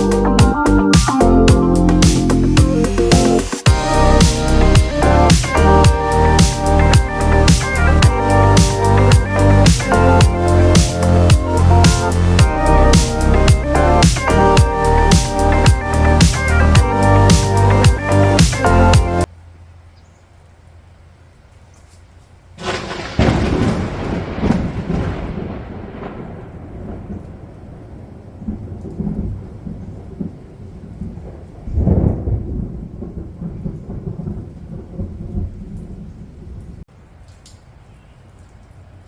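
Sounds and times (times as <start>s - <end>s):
rain falling: 0.0s - 39.0s
thunderclap rumbling: 22.6s - 36.8s.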